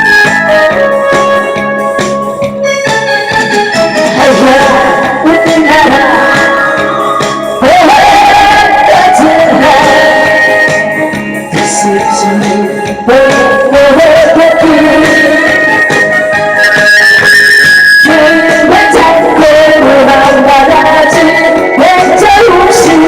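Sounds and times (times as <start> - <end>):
trot music over loudspeakers: 0.0 - 23.0
person singing: 4.0 - 16.7, 18.0 - 23.0.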